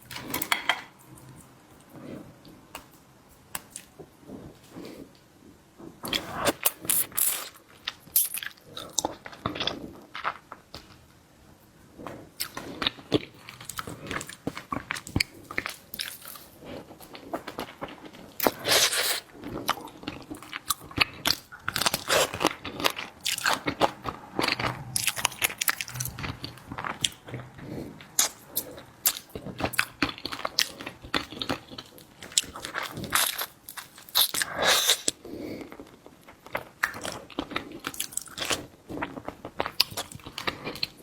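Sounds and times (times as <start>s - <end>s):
close-miked crunching and chewing: 6.0s - 11.1s, 11.9s - 41.0s.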